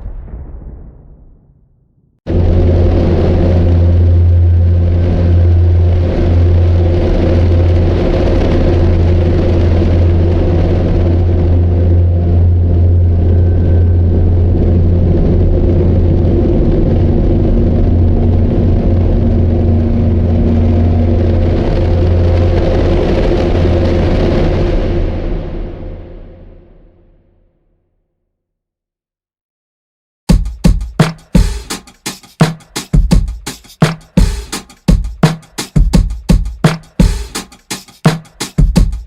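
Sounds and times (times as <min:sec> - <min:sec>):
vehicle engine rumbling: 0:02.3 - 0:16.7.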